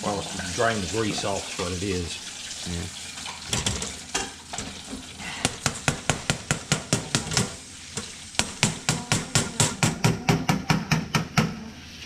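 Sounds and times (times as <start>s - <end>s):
fry basket knocking on metal: 5.5s - 11.6s.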